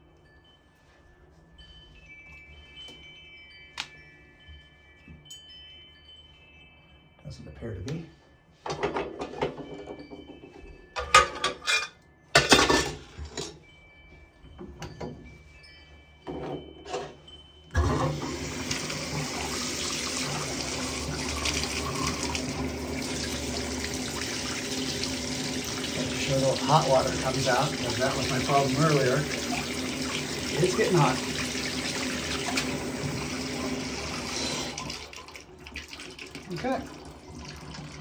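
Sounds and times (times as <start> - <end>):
shower water running: 17.8 - 38.0.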